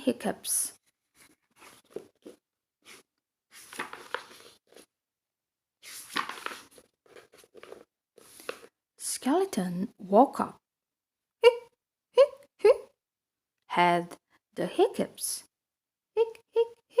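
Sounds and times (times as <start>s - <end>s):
book pages rustling: 0.8s - 5.0s, 5.8s - 8.8s.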